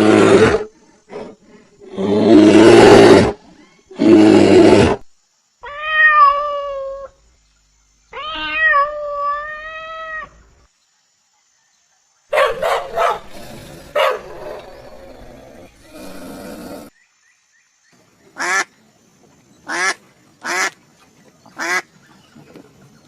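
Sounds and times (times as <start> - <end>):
big cat roaring: 0.0 - 5.0, 13.2 - 16.9
cat meowing: 5.6 - 7.1, 8.2 - 10.3.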